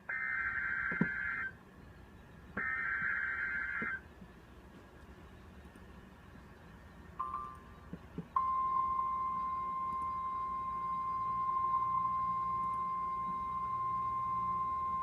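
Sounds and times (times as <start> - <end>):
faint radio hiss: 0.0 - 15.0
steady high alarm tone: 8.4 - 15.0.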